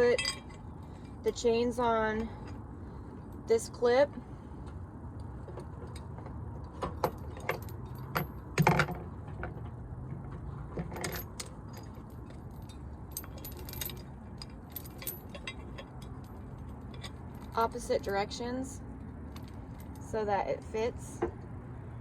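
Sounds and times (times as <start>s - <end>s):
metal chains clinking: 0.0s - 2.6s, 5.8s - 9.6s, 10.7s - 20.3s.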